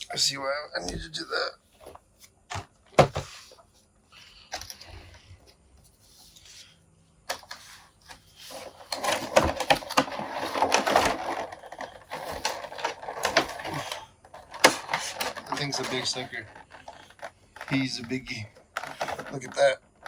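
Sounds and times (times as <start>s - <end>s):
plastic crackling and rattling: 7.3s - 20.0s.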